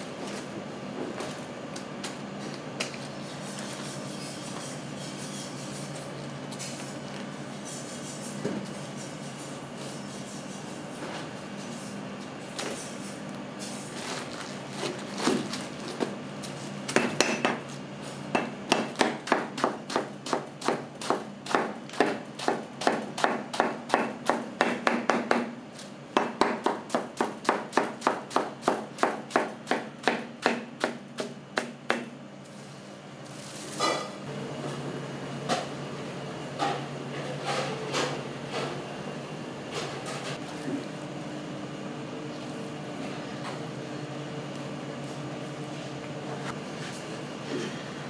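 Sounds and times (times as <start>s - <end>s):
knife chopping on cutting board: 18.4s - 25.5s, 26.2s - 32.1s.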